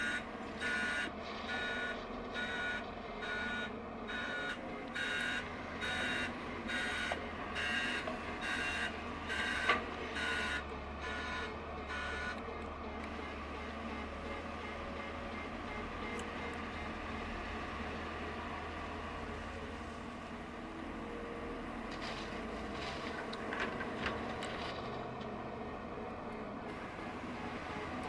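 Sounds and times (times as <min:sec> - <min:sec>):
backup alarm beeping: 0:00.0 - 0:12.4
engine humming: 0:00.0 - 0:28.0.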